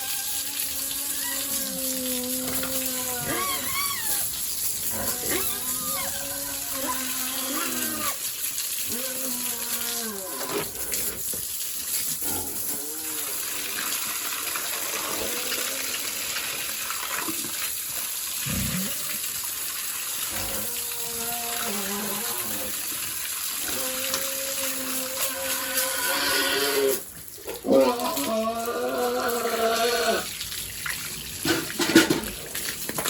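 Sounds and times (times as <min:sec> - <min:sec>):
pig calls: 0:00.0 - 0:08.2
water spraying from a hose: 0:00.0 - 0:33.0.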